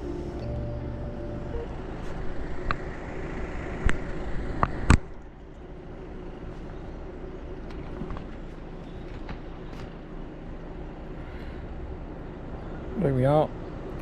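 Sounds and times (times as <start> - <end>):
intro music: 0.0 - 2.3
outdoor background noise: 0.0 - 14.0.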